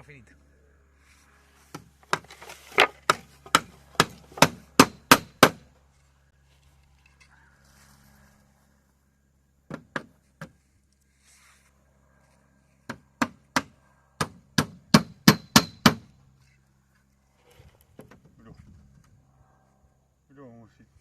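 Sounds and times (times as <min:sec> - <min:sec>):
hammer striking wood: 0:01.7 - 0:05.7, 0:09.7 - 0:10.6, 0:12.9 - 0:16.1.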